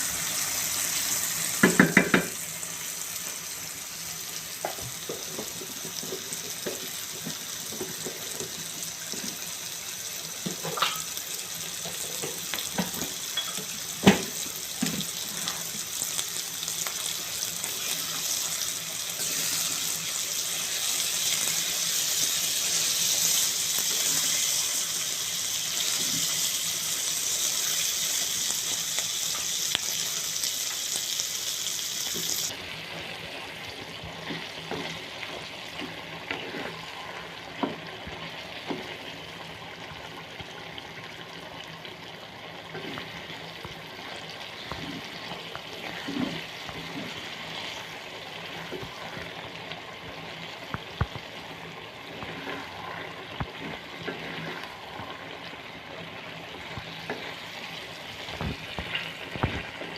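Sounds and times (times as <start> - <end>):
water tap running: 0.0 - 2.8, 18.1 - 32.5
food sizzling in a pan: 0.0 - 59.9.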